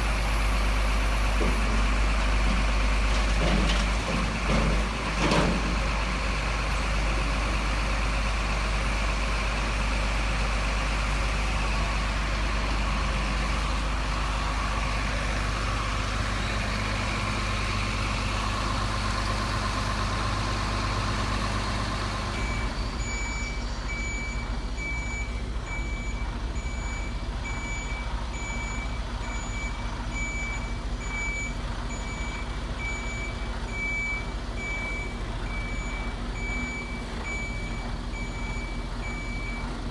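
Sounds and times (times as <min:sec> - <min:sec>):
reversing beeper: 0:20.8 - 0:39.7.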